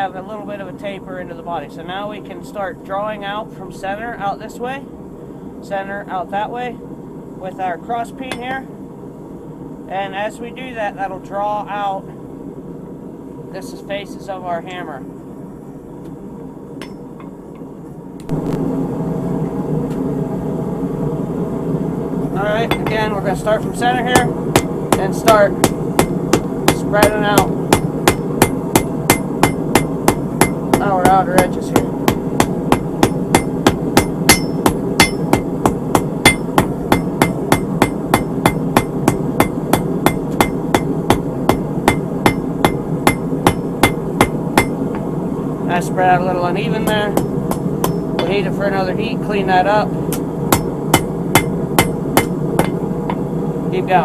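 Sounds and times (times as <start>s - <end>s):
low rumble: 6.7s - 54.0s
hammer ringing on hot steel: 8.3s - 8.6s, 16.8s - 17.4s, 22.5s - 45.0s, 46.8s - 48.5s, 50.1s - 53.3s
forge fire roaring: 17.4s - 54.0s.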